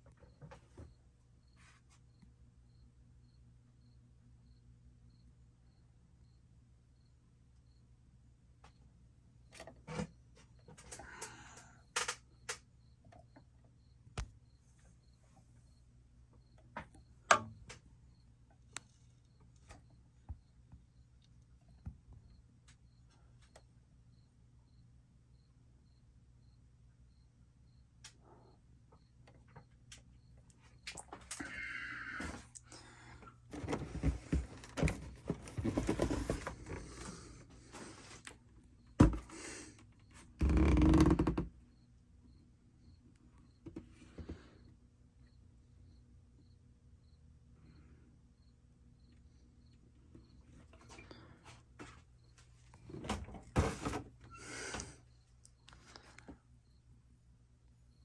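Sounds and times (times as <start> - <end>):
faint low hum: 0.0 - 58.0
scraping handling noises: 33.5 - 38.3.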